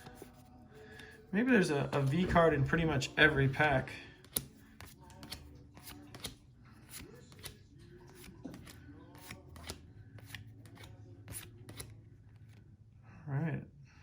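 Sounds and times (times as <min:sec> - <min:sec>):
cards flipping and sliding: 0:01.8 - 0:12.6.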